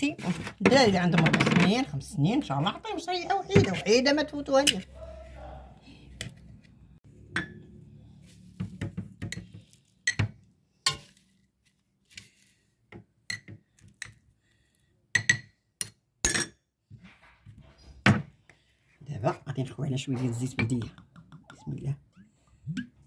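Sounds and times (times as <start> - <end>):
glass jar and dishes clinking: 16.2 - 16.6.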